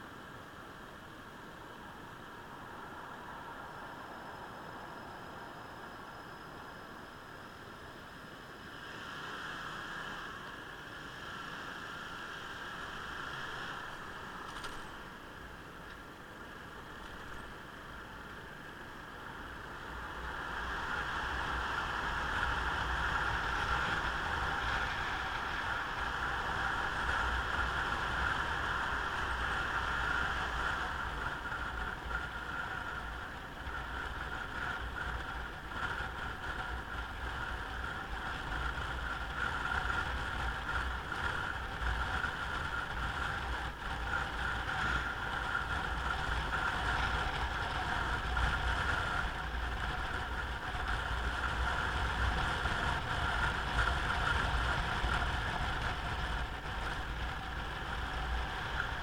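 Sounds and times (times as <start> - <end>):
road rumble: 0.0 - 59.0
wind rushing over microphone: 16.4 - 59.0.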